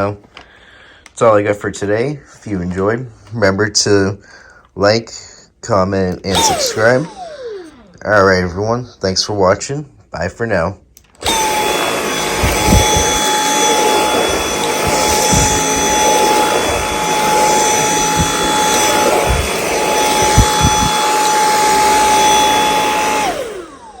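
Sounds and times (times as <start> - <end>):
vacuum cleaner whining: 6.2 - 8.5, 11.2 - 24.0
vacuum motor winding down: 6.3 - 8.0, 11.2 - 24.0.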